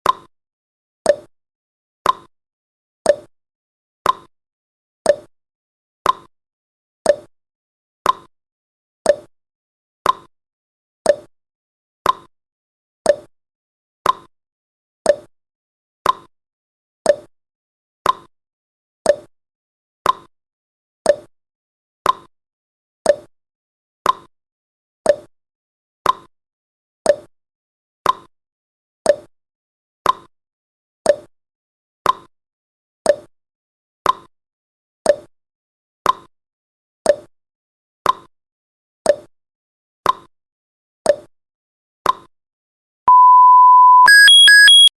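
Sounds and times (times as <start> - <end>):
timer ticking: 43.1 - 44.9.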